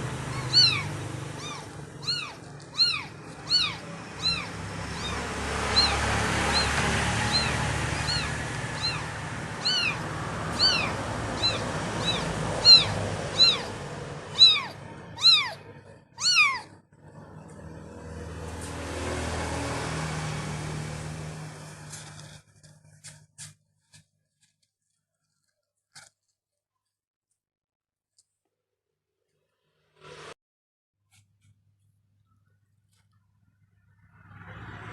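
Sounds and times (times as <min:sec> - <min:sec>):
kitten mewing: 0:00.2 - 0:16.8.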